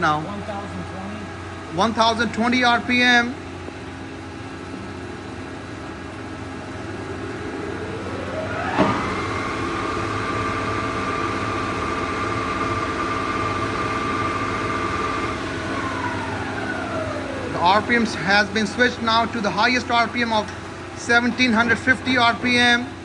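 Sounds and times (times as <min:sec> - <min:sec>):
lathe spindle whine: 0:00.0 - 0:23.0.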